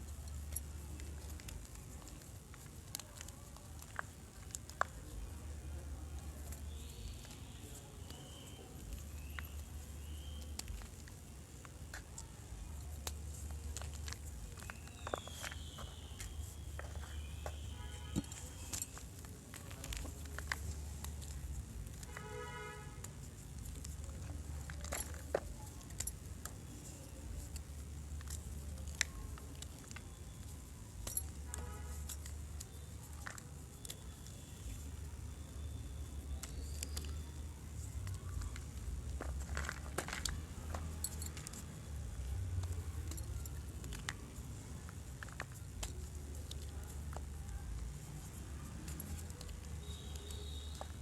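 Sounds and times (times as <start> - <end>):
chalk crunching and snapping: 0.1 - 22.3.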